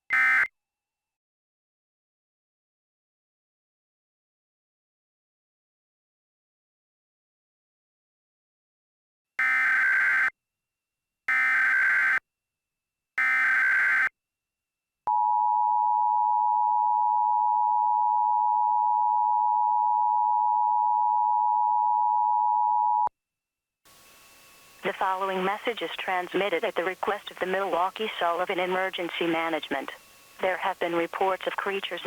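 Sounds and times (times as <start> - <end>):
digital data bursts: 24.8 - 32.0.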